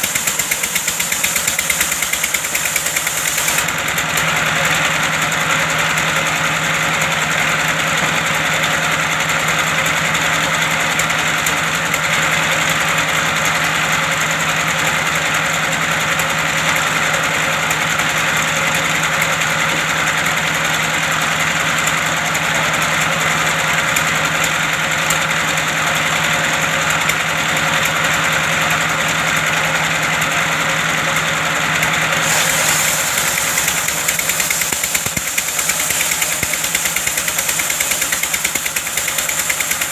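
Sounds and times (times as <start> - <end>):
wood-cutting machine engine: 0.0 - 39.9.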